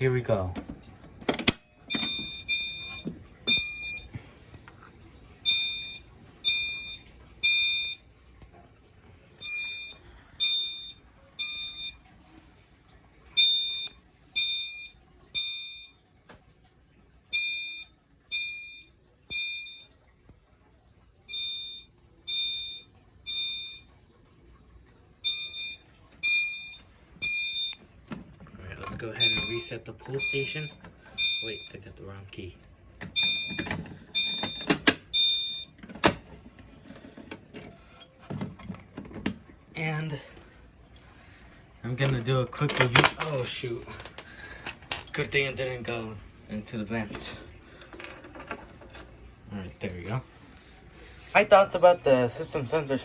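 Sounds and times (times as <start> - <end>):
fire alarm chimes: 1.8 - 4.2, 5.4 - 8.2, 9.4 - 12.1, 13.3 - 16.1, 17.3 - 20.1, 21.2 - 24.6, 25.2 - 27.8, 29.0 - 32.0, 33.1 - 35.8.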